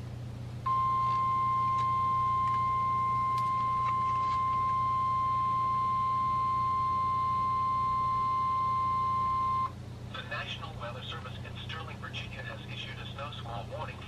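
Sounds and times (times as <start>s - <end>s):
weather radio alarm tone: 0.7s - 9.7s.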